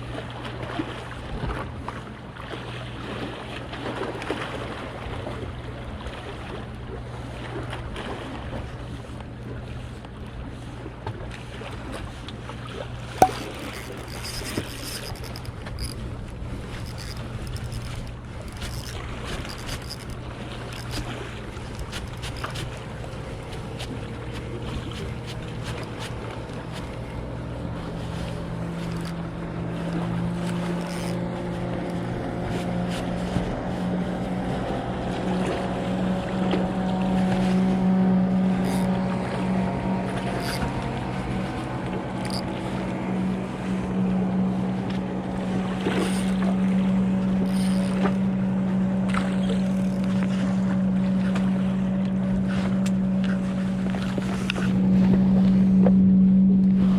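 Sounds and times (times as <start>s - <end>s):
motorboat engine humming: 0.0s - 56.9s
scattered clicks: 13.2s - 16.0s.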